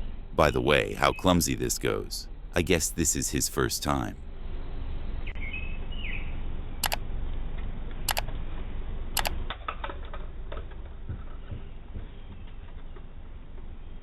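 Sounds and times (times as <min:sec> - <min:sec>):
low hum: 0:00.0 - 0:09.5
sharp clicks: 0:08.1 - 0:08.3, 0:09.2 - 0:09.4.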